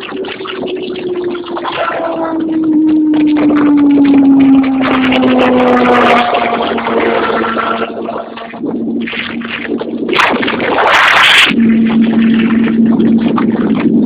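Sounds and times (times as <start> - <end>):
wind rush on microphone: 0.0 - 14.0
motorcycle engine: 0.7 - 9.7.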